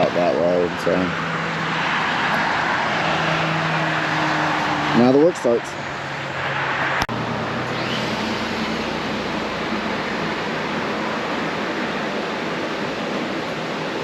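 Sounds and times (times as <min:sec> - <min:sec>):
chainsaw cutting log: 0:07.1 - 0:11.1.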